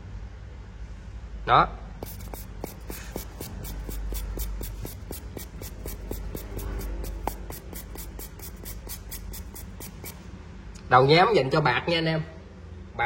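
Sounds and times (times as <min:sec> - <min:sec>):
pad scrubbing metal: 0:02.0 - 0:10.2.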